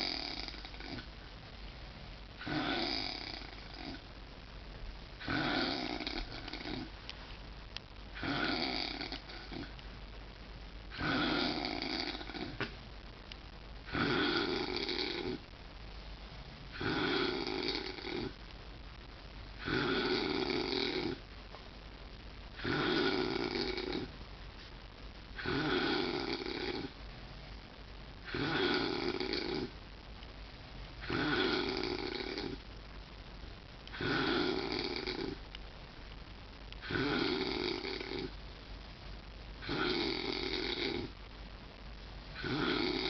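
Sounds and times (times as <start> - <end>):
loud snoring: 0.0 - 1.1, 2.4 - 4.0, 5.2 - 6.9, 8.2 - 9.7, 10.9 - 12.7, 13.9 - 15.4, 16.7 - 18.4, 19.6 - 21.2, 22.6 - 24.1, 25.4 - 27.0, 28.3 - 29.8, 31.0 - 32.6, 33.9 - 35.4, 36.8 - 38.4, 39.6 - 41.2, 42.4 - 43.0
quiet breathing: 0.0 - 43.0.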